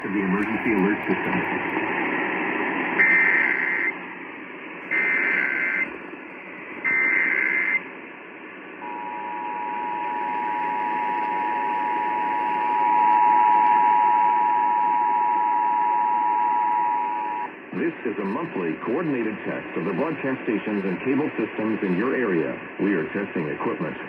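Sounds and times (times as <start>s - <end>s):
radio static hiss: 0.0s - 24.0s
data burst tones: 3.0s - 4.0s.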